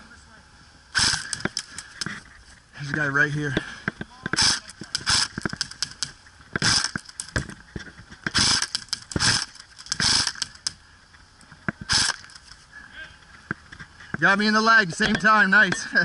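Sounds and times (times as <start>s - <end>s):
airsoft guns firing bursts: 0.9s - 2.1s, 4.4s - 7.4s, 8.3s - 10.7s
sharp clicks: 1.0s - 2.2s, 2.9s - 7.6s, 8.2s - 10.8s, 11.4s - 12.6s.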